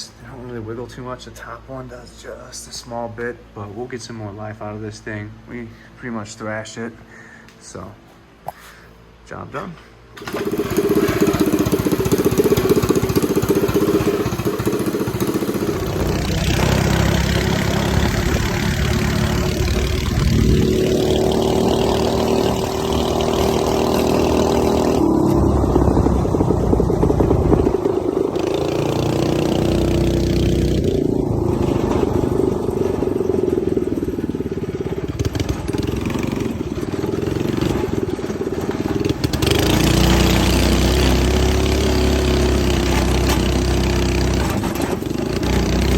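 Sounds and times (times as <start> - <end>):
go-kart engine revving: 10.2 - 45.9.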